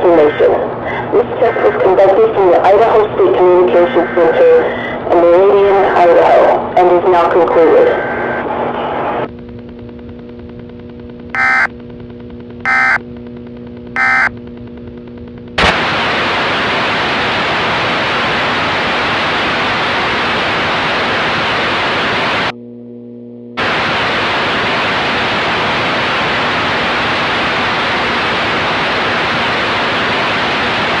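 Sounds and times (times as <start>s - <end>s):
low steady hum: 0.0s - 31.0s
loud hissing static: 15.6s - 22.5s, 23.6s - 31.0s.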